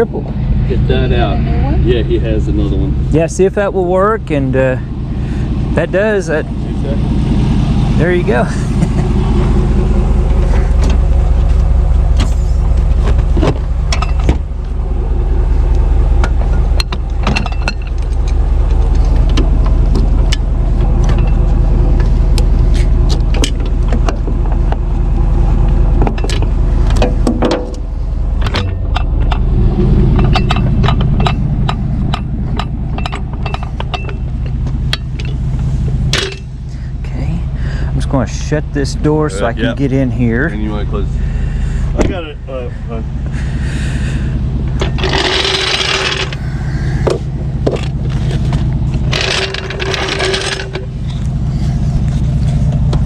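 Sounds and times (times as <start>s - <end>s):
vehicle engine idling: 0.0s - 53.0s
metallic clicks and clanks: 30.1s - 35.4s, 44.8s - 46.4s, 48.9s - 51.2s.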